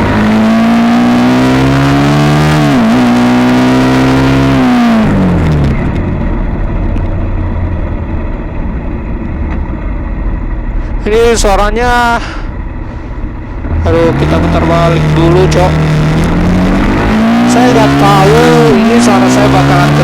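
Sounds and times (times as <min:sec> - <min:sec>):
motorcycle engine revving: 0:00.0 - 0:08.6, 0:13.3 - 0:20.0.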